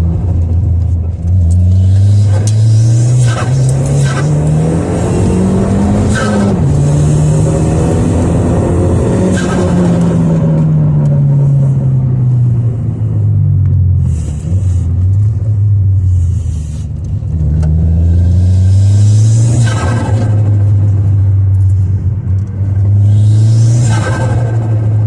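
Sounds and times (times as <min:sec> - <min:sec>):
loud car engine revving down: 0:01.2 - 0:13.2, 0:17.2 - 0:25.0.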